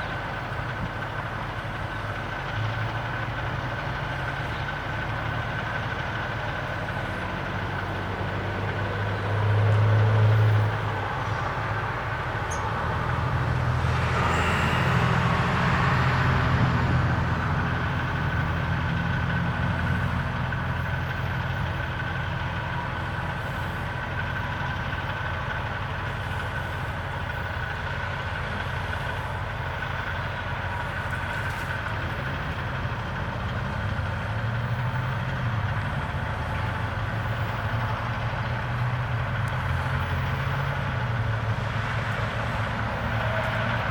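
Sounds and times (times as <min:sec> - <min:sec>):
low hum of vehicle engines: 0:00.0 - 0:43.9
vehicle passing: 0:08.0 - 0:20.3.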